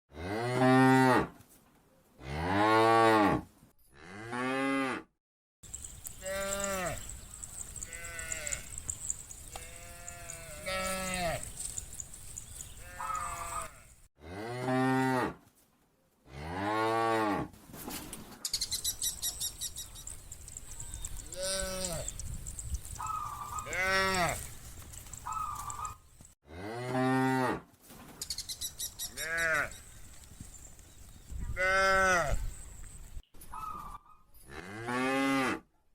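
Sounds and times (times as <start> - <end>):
cattle mooing: 6.2 - 11.5, 12.8 - 15.3, 23.2 - 24.5.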